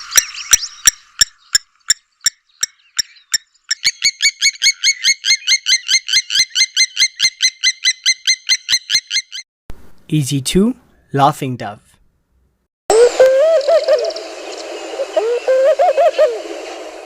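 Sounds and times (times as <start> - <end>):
lapwing calling: 2.2 - 9.4, 12.9 - 17.0.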